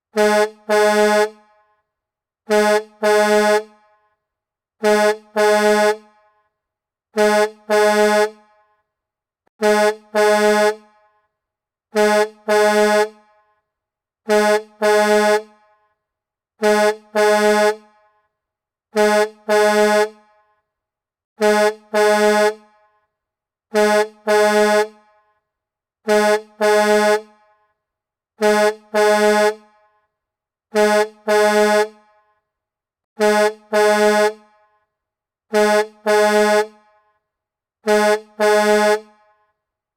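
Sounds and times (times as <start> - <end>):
truck horn double honk: 0.1 - 1.6, 2.5 - 3.9, 4.8 - 6.3, 7.2 - 8.6, 9.6 - 11.1, 11.9 - 13.5, 14.2 - 15.8, 16.6 - 18.2, 18.9 - 20.4, 21.4 - 22.9, 23.7 - 25.2, 26.0 - 27.6, 28.4 - 29.9, 30.7 - 32.2, 33.2 - 34.6, 35.5 - 36.9, 37.8 - 39.4.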